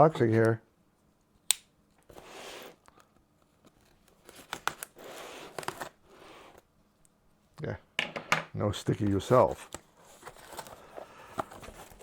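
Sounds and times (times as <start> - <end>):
tape tearing on cardboard: 4.2 - 6.6.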